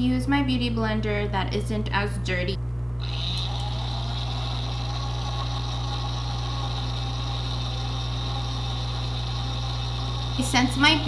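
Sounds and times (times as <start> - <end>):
small electric motor humming: 3.0 - 11.0.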